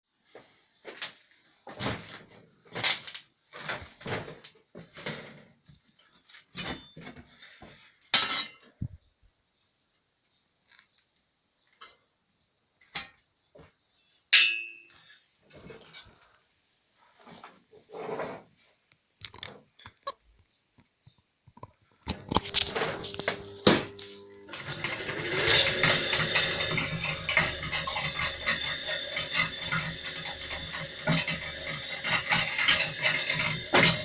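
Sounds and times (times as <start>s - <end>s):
steel parts clanking: 22.1s - 34.0s.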